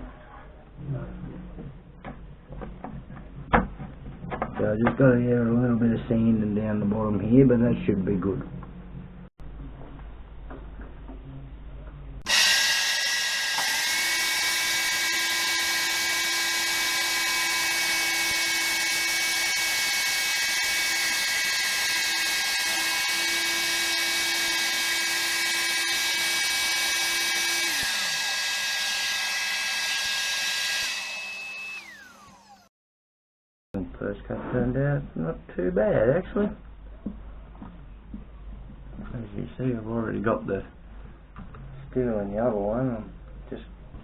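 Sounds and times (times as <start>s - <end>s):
electric power tool grinding: 12.3s - 32.7s.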